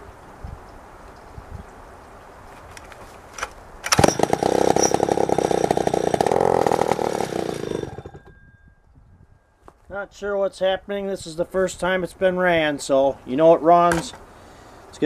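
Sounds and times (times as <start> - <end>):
chainsaw engine running: 3.9 - 8.4.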